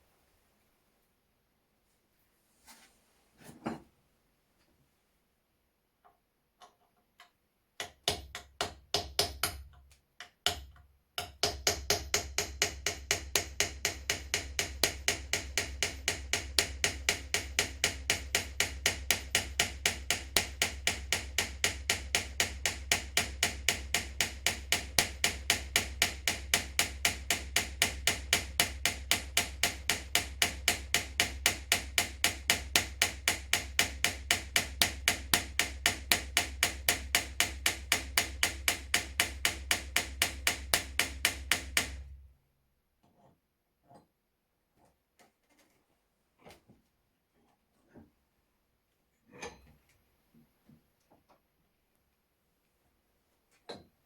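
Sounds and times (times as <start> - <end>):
sharp knocks: 10.5 - 42.0.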